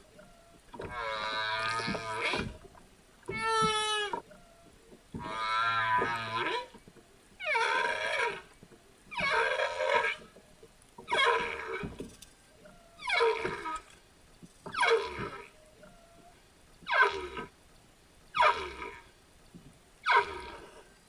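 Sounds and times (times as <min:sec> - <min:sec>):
whale calls: 0:00.0 - 0:06.8, 0:07.4 - 0:10.4, 0:11.0 - 0:14.0, 0:14.7 - 0:17.6, 0:18.4 - 0:19.1.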